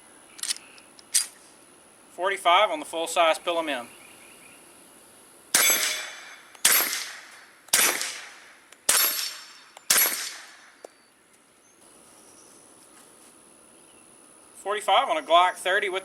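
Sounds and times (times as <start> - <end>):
suppressed pistol shots: 5.5 - 10.7.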